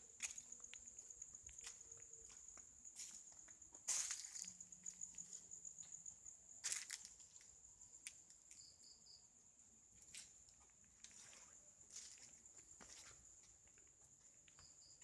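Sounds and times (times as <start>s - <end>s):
footsteps on the ground: 0.0s - 6.0s, 6.6s - 7.2s, 10.0s - 14.7s
crickets trilling: 0.0s - 15.0s.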